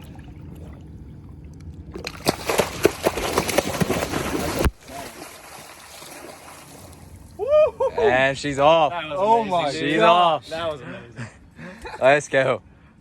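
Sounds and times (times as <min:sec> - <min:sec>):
water splashing and sloshing: 0:00.0 - 0:07.4.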